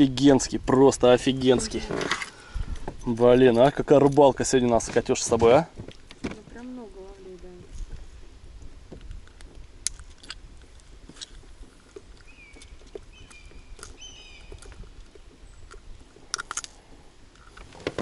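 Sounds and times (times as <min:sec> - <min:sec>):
small bird chirping: 0:12.2 - 0:15.8.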